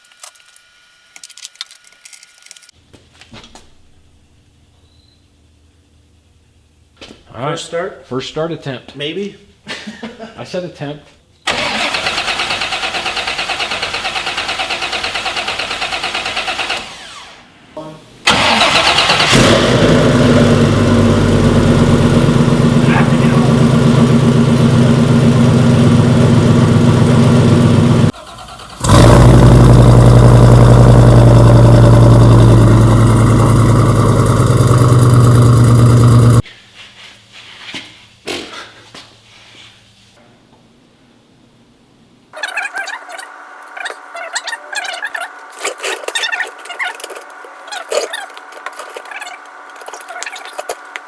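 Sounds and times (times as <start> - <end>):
car engine cranking: 11.5 - 17.4, 18.3 - 36.4, 43.1 - 51.0
car engine running loudly: 19.3 - 28.1, 28.8 - 36.4.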